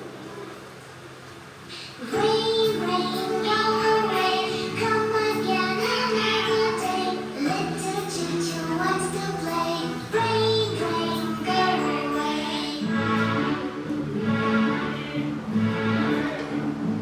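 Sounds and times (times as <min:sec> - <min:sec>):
child singing over music: 0:02.0 - 0:13.5.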